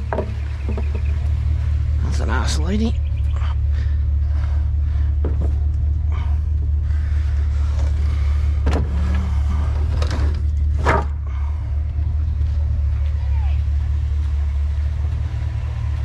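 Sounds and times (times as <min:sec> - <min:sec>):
knocks and rattles: 0:00.0 - 0:02.0, 0:04.6 - 0:13.0
vehicle interior drone: 0:00.0 - 0:16.0.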